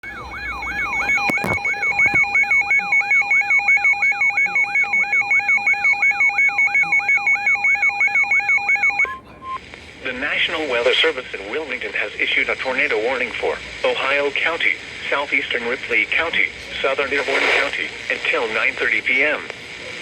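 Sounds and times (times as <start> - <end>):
clicks: 1.0 - 2.4.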